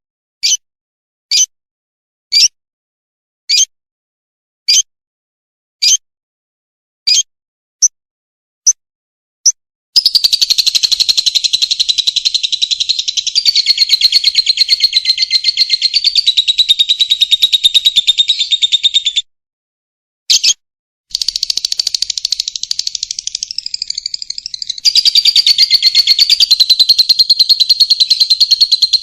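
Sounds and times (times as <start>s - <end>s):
lovebird chattering trill: 10.0s - 19.2s, 20.3s - 29.0s
lovebird chirps: 10.0s - 19.3s, 20.3s - 29.0s.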